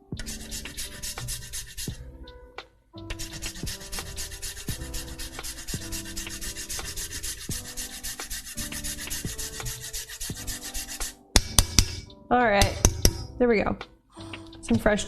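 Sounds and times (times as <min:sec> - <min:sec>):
ginger rasping on a grater: 0:00.2 - 0:02.0, 0:03.1 - 0:11.9.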